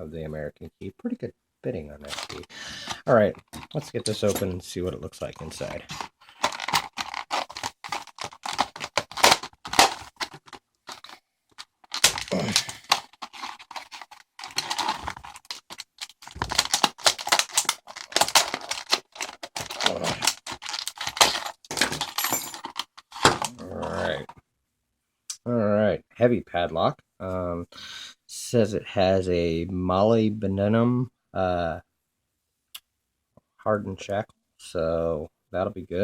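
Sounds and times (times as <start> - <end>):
stiff plastic crackling: 2.0 - 4.3, 5.2 - 23.9.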